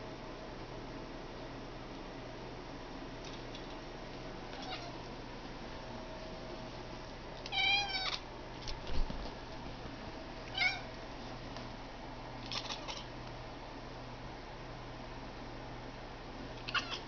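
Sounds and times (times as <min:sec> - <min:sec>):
cat chattering call: 0:04.5 - 0:05.0, 0:12.4 - 0:13.1, 0:16.6 - 0:17.0.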